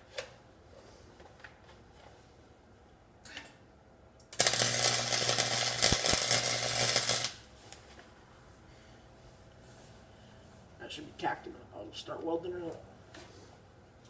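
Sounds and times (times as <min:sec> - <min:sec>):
welding arc crackling: 0:04.2 - 0:07.8
welder humming: 0:04.3 - 0:07.8.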